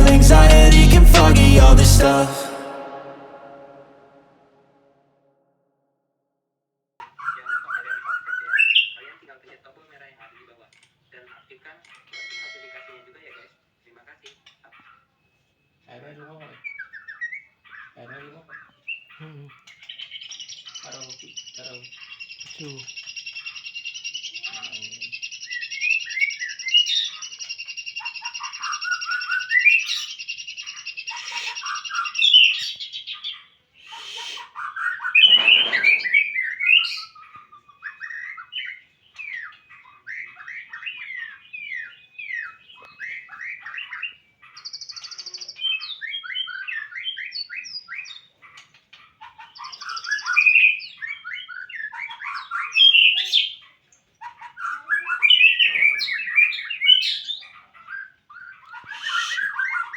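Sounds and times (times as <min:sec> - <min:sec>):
high buzzing trill: 0:00.0 - 0:04.2
songbird singing: 0:16.5 - 0:53.7, 0:54.6 - 0:59.9.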